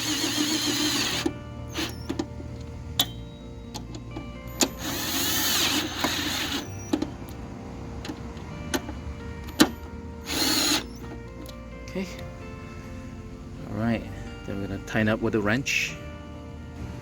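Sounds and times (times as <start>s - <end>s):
noisy power tool burst: 0.0s - 2.2s, 4.8s - 7.0s, 10.2s - 11.1s
metal tools clinking: 0.0s - 7.4s
background music: 0.0s - 17.0s.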